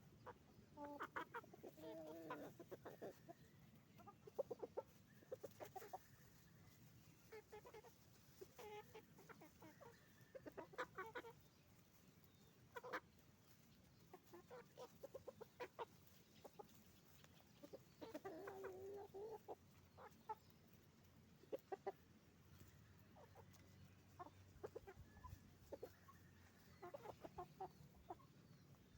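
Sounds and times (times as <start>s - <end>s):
long drawn-out chicken call: 0.0s - 11.6s, 14.1s - 20.5s
chickens clucking: 0.0s - 28.9s.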